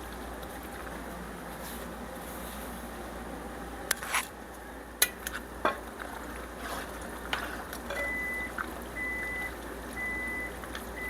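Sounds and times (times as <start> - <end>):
stirring thick sauce: 5.3 - 11.0.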